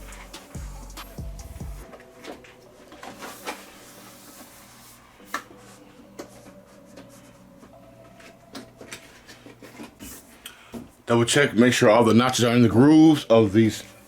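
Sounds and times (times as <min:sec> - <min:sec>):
plastic sheets rubbing and clicking: 0:02.9 - 0:05.0.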